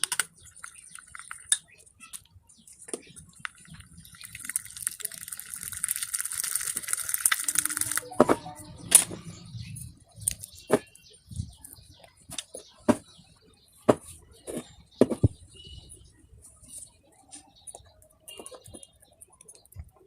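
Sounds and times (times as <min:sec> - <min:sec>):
slime wet crackling: 0:00.0 - 0:02.4, 0:03.0 - 0:08.2
sticky pops and clicks: 0:03.3 - 0:08.5.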